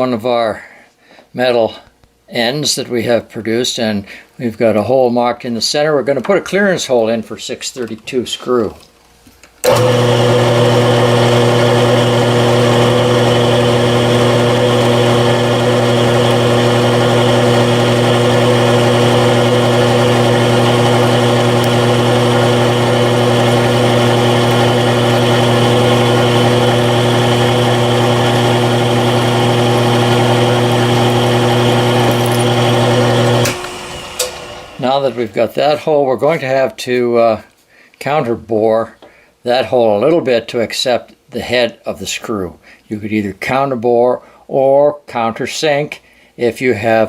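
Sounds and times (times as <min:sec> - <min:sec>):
drill motor humming: 0:09.7 - 0:35.3.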